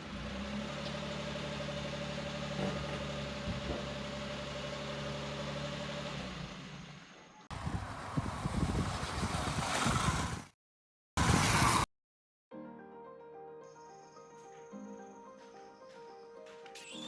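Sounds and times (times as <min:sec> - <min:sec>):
small van engine idling: 0:00.0 - 0:09.6.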